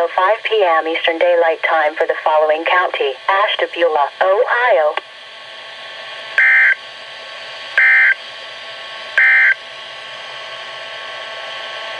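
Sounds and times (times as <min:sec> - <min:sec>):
radio static hiss: 0:00.0 - 0:05.1.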